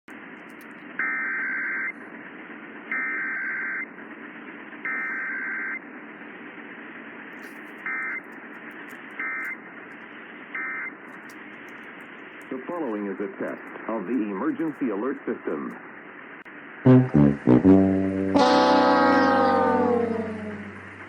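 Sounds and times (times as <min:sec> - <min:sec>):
harsh two-tone warble: 0:16.9 - 0:21.0.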